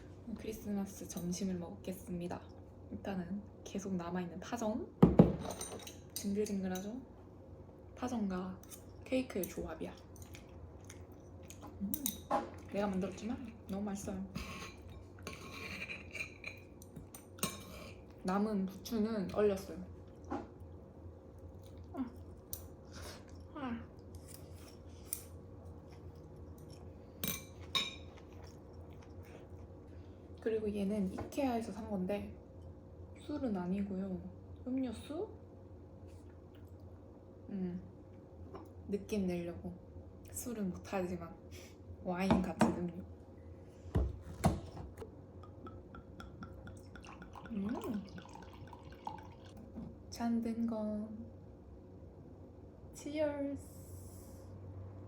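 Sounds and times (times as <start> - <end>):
drink dripping into a glass: 45.4 - 49.6.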